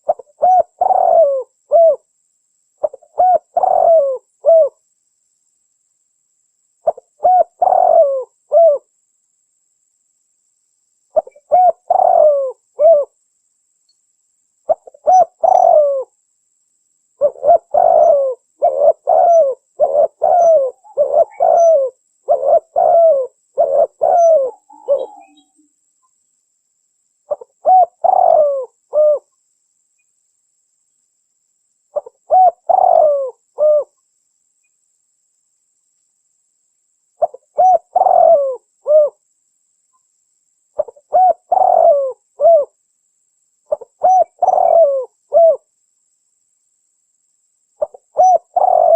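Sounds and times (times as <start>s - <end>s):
dove cooing: 0.0s - 2.1s, 2.8s - 4.8s, 6.8s - 8.9s, 11.2s - 13.2s, 14.7s - 16.1s, 17.2s - 25.6s, 27.3s - 29.3s, 32.0s - 33.9s, 37.2s - 39.2s, 40.8s - 42.8s, 43.7s - 45.6s, 47.8s - 48.9s.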